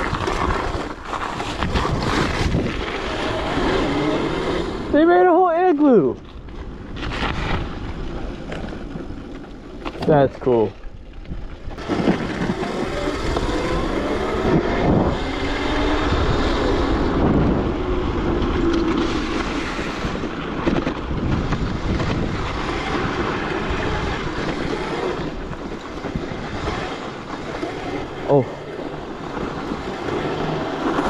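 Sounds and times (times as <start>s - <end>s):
wind rushing over microphone: 0.0s - 9.3s, 10.2s - 31.0s
electric motor whine: 2.6s - 5.0s, 11.9s - 20.2s, 21.8s - 25.6s.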